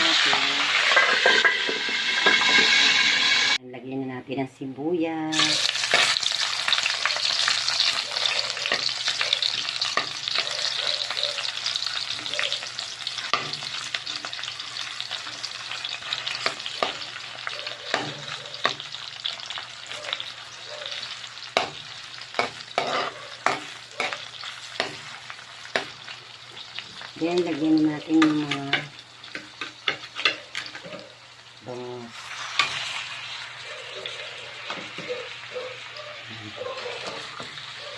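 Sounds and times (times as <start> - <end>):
onions sizzling in hot oil: 0.0 - 3.6, 5.2 - 37.9
utensil scraping a pan: 0.0 - 3.6, 21.6 - 25.9.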